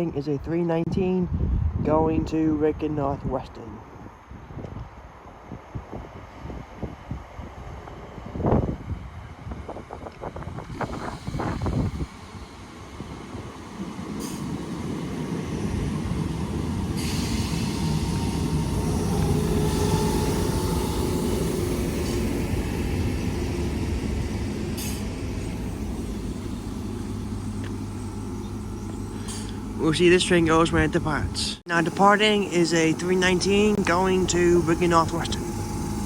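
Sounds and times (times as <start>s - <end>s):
electric train humming: 5.0s - 36.0s
train air hiss: 14.0s - 28.4s, 29.0s - 29.8s.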